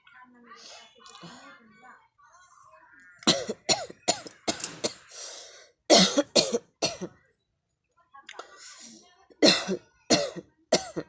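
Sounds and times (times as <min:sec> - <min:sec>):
person breathing in: 0:05.1 - 0:05.8
person coughing: 0:05.9 - 0:07.1, 0:09.4 - 0:11.0.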